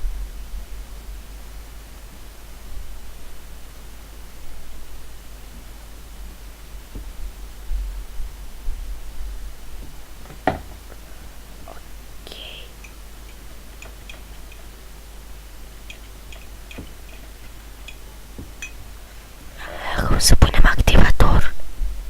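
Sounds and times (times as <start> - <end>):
utensil tapping in a mug: 12.8 - 14.7, 15.9 - 18.8.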